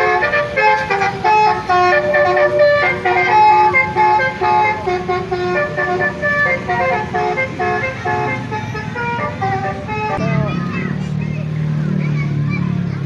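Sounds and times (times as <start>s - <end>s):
horn playing a melody: 0.0s - 10.3s.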